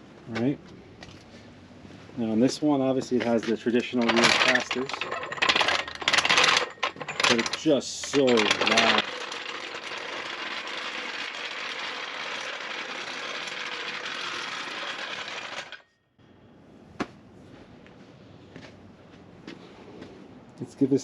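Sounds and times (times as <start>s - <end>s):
jack wheels clattering: 2.5s - 15.8s.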